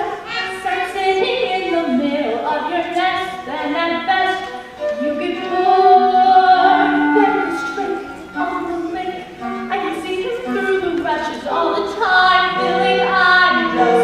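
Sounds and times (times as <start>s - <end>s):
woman singing: 0.0s - 14.0s.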